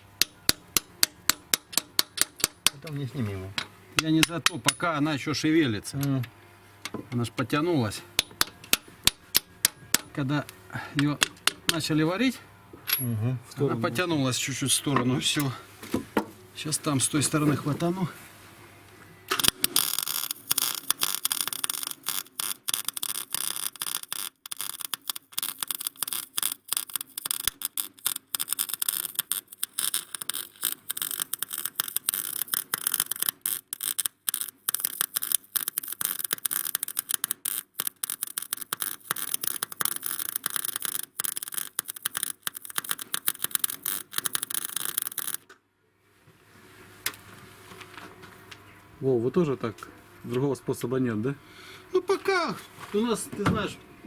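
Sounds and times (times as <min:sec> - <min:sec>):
arc welding crackling hiss: 0:00.0 - 0:12.4, 0:13.9 - 0:18.5, 0:19.2 - 0:45.4.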